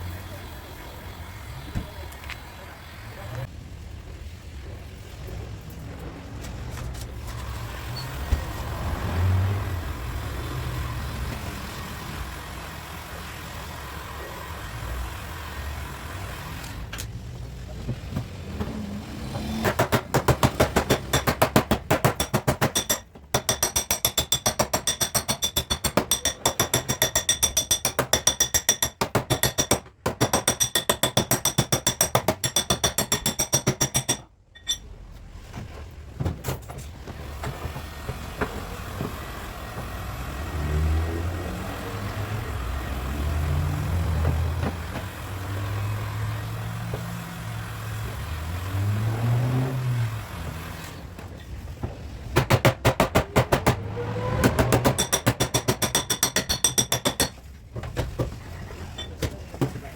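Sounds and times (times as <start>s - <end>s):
hammer tapping sheet metal: 19.6s - 34.8s, 52.4s - 57.4s.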